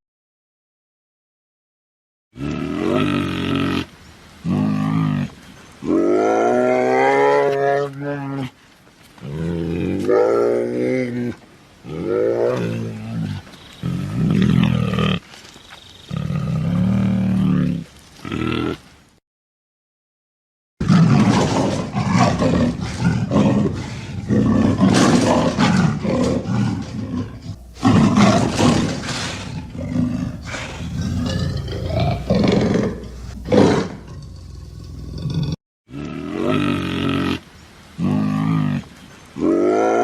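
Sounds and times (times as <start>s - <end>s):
lion roaring and growling: 2.4s - 8.6s, 9.2s - 15.2s, 20.8s - 37.4s.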